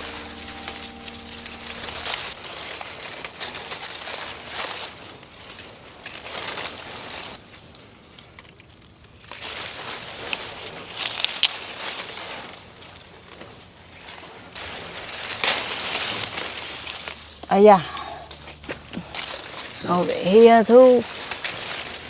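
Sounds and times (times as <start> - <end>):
leaves and branches rustling: 0.0 - 22.0
branches snapping: 8.6 - 12.0, 18.3 - 22.0.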